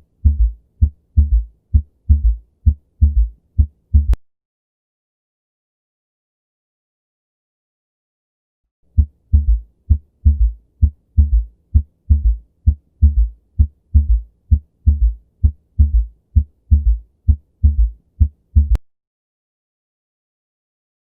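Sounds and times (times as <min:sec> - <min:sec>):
heartbeat: 0:00.2 - 0:04.2, 0:08.9 - 0:18.8.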